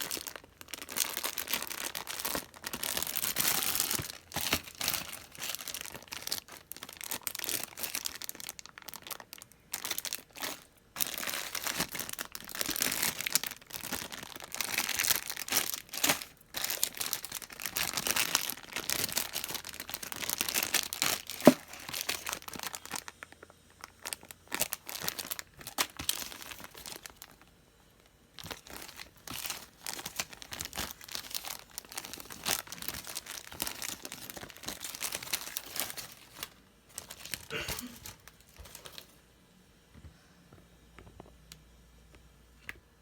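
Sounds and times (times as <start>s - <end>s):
plastic packaging crinkling: 0.0s - 39.2s.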